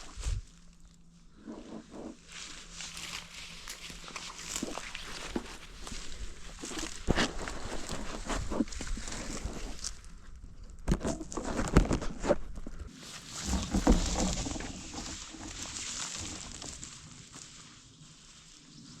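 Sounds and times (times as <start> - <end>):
bike knocks and rattles: 13.4 - 16.9.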